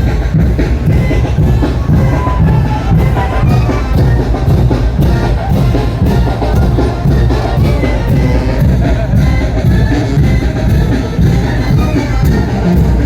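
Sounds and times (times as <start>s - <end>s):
bass drum and drum beat: 0.0s - 13.0s
brass band playing: 0.0s - 13.0s.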